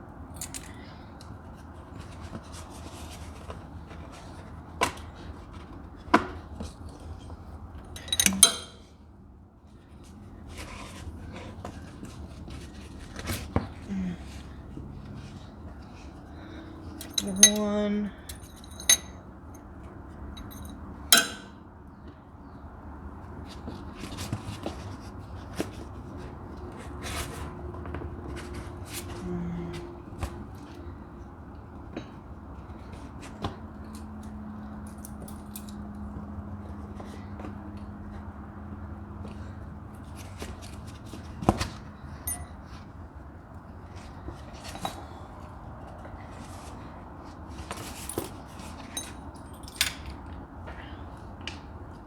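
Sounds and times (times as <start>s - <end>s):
small metal parts clicking and scraping: 0.4s - 0.8s, 8.0s - 8.8s, 17.0s - 19.2s, 20.4s - 21.5s
sharp metallic clank: 8.0s - 8.8s, 20.4s - 21.6s
metallic clink: 8.0s - 8.9s, 17.0s - 19.2s, 20.4s - 21.6s, 42.2s - 42.6s.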